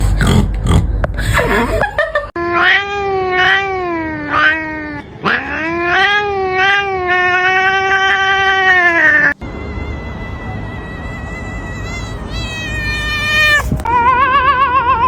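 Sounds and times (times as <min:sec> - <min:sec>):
cat wailing: 0:02.4 - 0:15.0.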